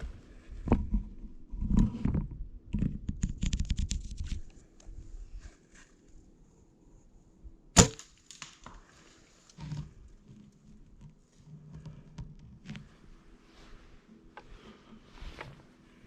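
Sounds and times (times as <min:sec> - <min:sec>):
gunshot: 0:07.8 - 0:08.1
faint rustling: 0:08.8 - 0:16.0.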